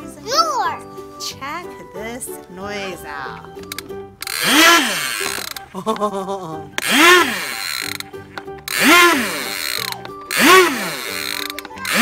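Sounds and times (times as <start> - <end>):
clicking: 3.6 - 4.6, 9.7 - 10.5, 11.1 - 12.0
toy electronic engine revving: 4.2 - 5.7, 6.8 - 12.0.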